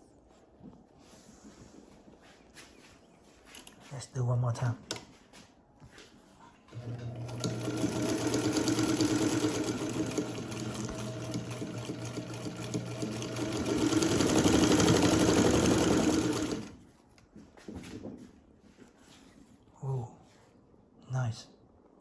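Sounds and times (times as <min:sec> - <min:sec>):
sewing machine running: 0:06.7 - 0:16.8.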